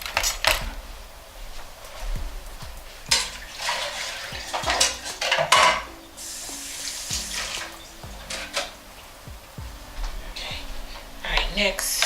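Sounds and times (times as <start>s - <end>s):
dishes clattering in sink: 3.0s - 6.0s.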